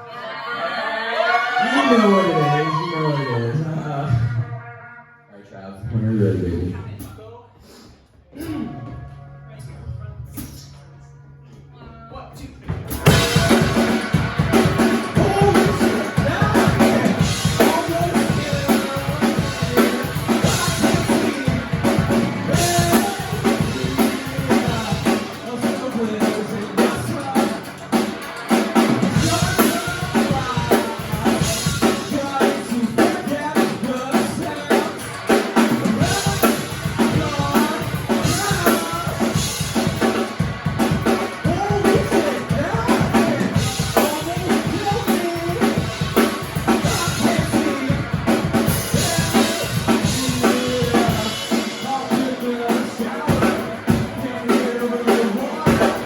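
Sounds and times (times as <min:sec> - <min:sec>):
rock band playing live: 0:01.2 - 0:04.4, 0:12.7 - 0:56.0
drum kit steady beat: 0:12.6 - 0:56.0.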